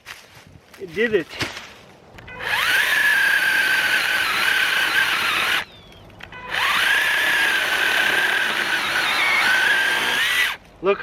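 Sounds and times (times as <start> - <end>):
mini chainsaw whining: 2.4 - 5.8, 6.5 - 10.6.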